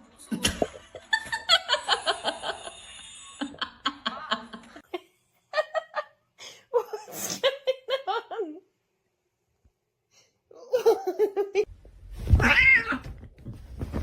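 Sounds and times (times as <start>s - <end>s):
person laughing in bursts: 10.7s - 11.7s.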